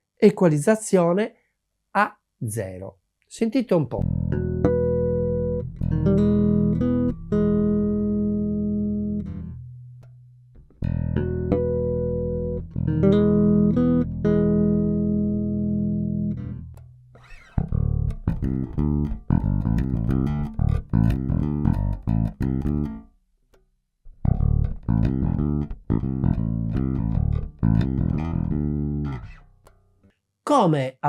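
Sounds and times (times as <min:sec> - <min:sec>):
electric bass plucked notes: 0:04.0 - 0:23.1, 0:24.1 - 0:29.8.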